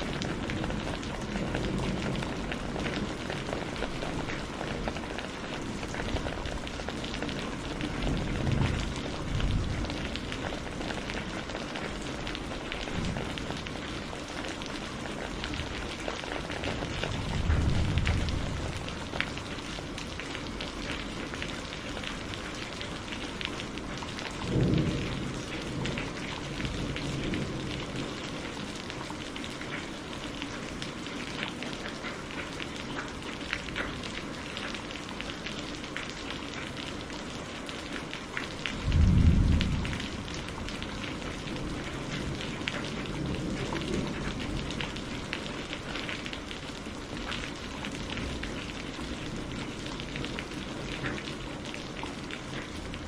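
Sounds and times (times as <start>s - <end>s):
low rolls of thunder: 0.0s - 12.0s, 16.7s - 19.3s, 24.4s - 28.4s, 38.7s - 45.0s
steady rain pattering: 0.0s - 53.0s.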